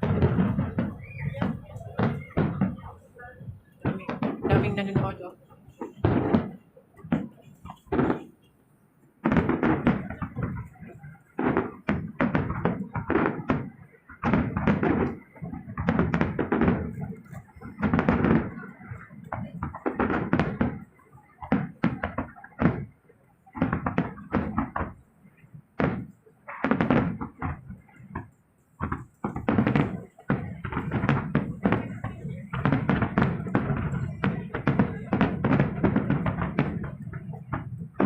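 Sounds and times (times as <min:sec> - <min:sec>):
fireworks booming: 0:00.0 - 0:38.0.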